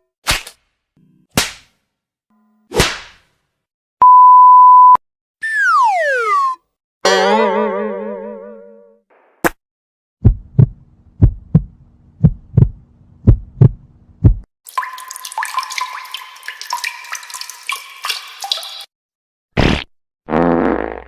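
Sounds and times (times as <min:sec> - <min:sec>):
heartbeat thumps: 0:10.2 - 0:14.5.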